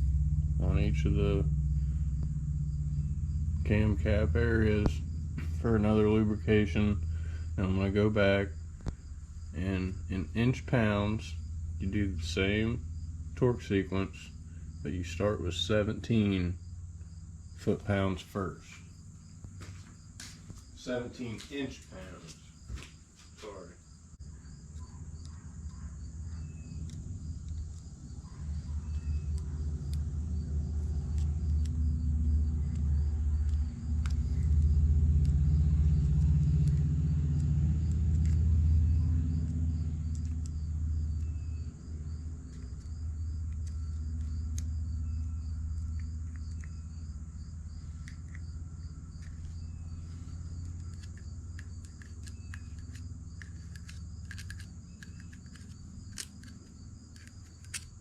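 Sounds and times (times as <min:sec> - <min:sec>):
low rumble: 0:00.0 - 0:20.8, 0:36.6 - 0:58.0
crickets chirping: 0:00.0 - 0:58.0.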